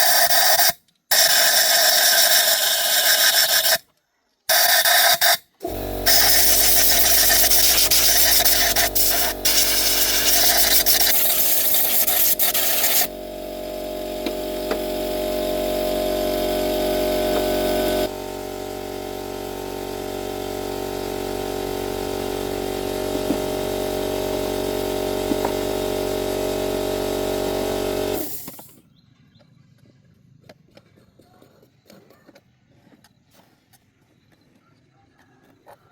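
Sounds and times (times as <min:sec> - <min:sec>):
power tool rasping and humming: 0:05.6 - 0:28.8.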